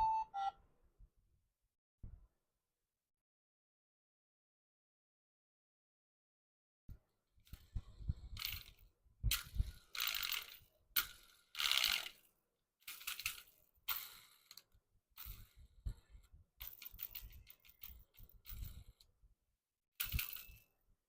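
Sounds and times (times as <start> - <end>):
plastic toys clicking and clattering: 7.4 - 19.2, 20.0 - 20.8.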